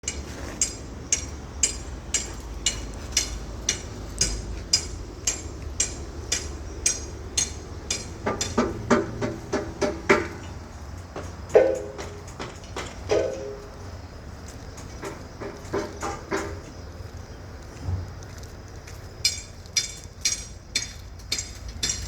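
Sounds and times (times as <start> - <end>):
hammer striking metal: 0.1 - 10.5, 11.2 - 13.8, 19.3 - 22.0.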